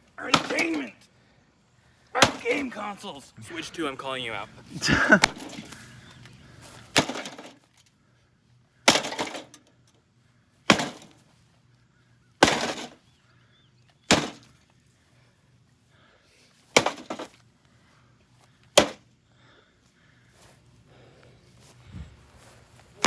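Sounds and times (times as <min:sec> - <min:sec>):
heavy blows smashing microwave: 0:00.2 - 0:00.9, 0:06.9 - 0:07.6, 0:08.9 - 0:09.6, 0:10.7 - 0:11.2, 0:12.4 - 0:13.0, 0:14.1 - 0:14.5
rattle of breaking parts: 0:07.0 - 0:07.9, 0:08.9 - 0:09.7, 0:12.4 - 0:13.0, 0:16.8 - 0:17.4.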